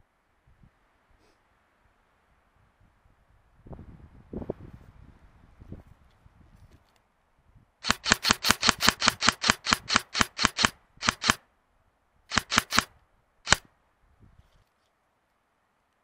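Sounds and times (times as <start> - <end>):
airsoft gun shots: 7.8 - 11.4, 12.3 - 12.9, 13.5 - 13.7.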